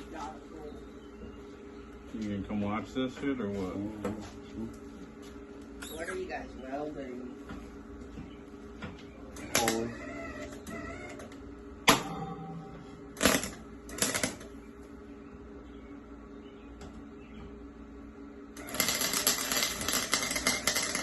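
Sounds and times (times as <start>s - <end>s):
welding arc crackling: 13.1s - 14.5s, 18.5s - 21.0s.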